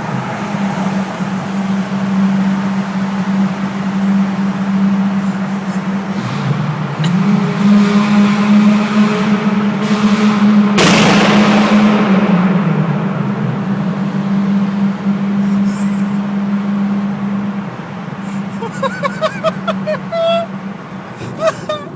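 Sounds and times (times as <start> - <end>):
car engine running in tunnel: 0.0 - 21.9
exhaust backfire bang: 9.8 - 12.9.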